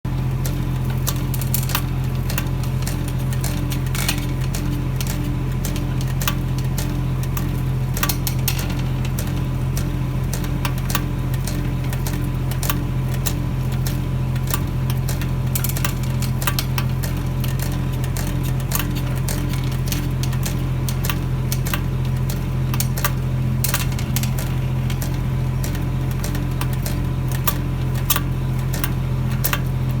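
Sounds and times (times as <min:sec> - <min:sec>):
engine drone: 0:00.1 - 0:30.0
pile creaking and cracking: 0:01.0 - 0:06.8.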